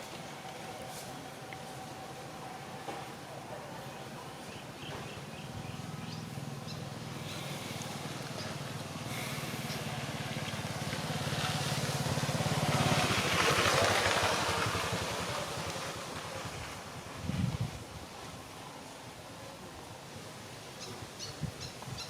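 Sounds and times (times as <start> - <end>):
vehicle engine passing by: 5.4 - 17.6.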